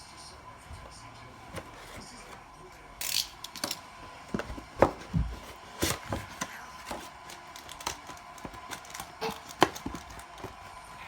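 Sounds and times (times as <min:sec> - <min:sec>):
card packs handled on tabletop: 0:00.8 - 0:02.6, 0:03.5 - 0:11.0.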